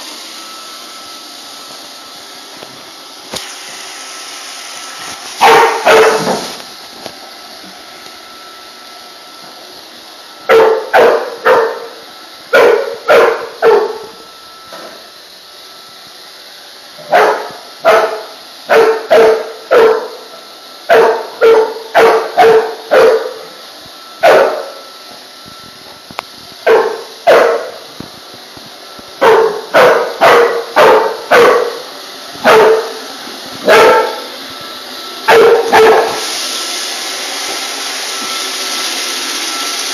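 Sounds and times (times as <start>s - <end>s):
dog barking loudly: 5.4s - 6.6s, 10.5s - 11.9s, 12.5s - 14.1s, 17.0s - 20.2s, 20.9s - 23.4s, 24.2s - 24.7s, 26.6s - 27.8s, 29.2s - 31.8s, 32.4s - 33.0s, 33.6s - 34.3s, 35.3s - 36.2s.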